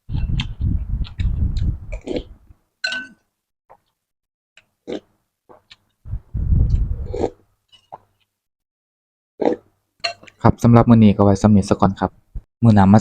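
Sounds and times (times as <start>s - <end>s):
chewing smacks and clicks: 0.2s - 2.3s.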